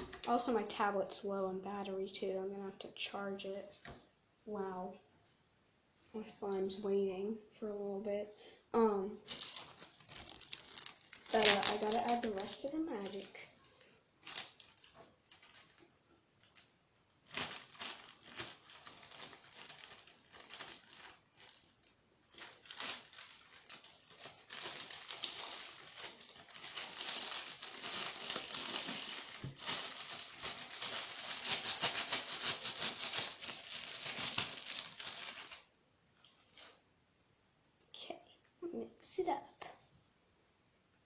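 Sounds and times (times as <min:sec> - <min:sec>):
plastic bag crinkling and rattling: 0:00.0 - 0:00.9, 0:09.2 - 0:36.8.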